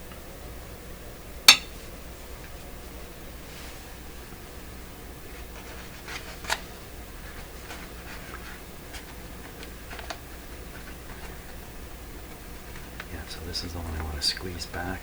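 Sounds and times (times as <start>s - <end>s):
steady low hum: 0.0s - 15.0s
paper and cloth taps and rustles: 3.5s - 15.0s.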